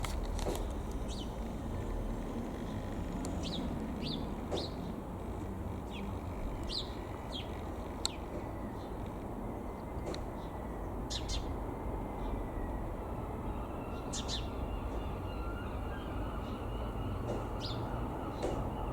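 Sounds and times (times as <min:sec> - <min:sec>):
low steady rumble: 0:00.0 - 0:11.1
small birds chirping: 0:00.0 - 0:11.6, 0:13.9 - 0:18.9.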